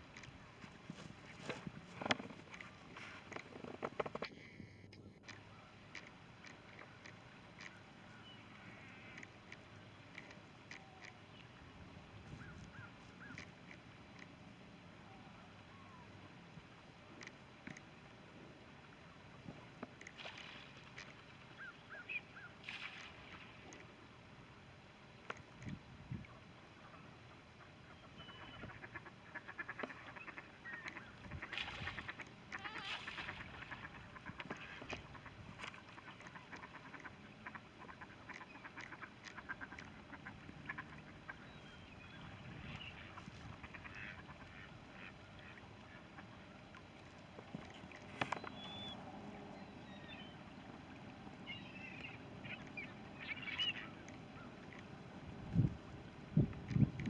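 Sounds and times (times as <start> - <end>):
ducks quacking: 27.9 - 46.4
geese honking: 35.9 - 46.2.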